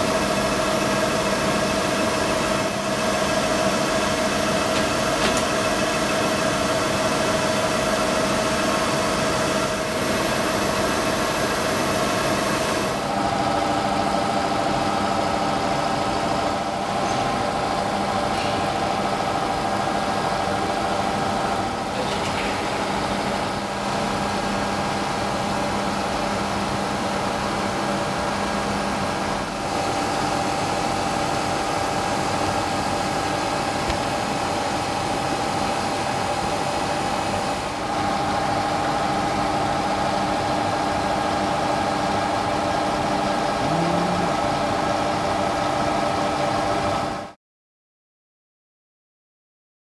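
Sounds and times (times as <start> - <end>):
milling machine hum: 0.0 - 46.5
machine whine changing pitch: 43.6 - 44.7.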